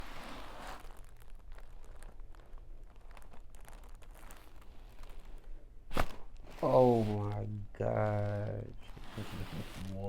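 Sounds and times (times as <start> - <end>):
crinkling and rustling: 0.0 - 10.0
low steady hum: 4.5 - 10.0.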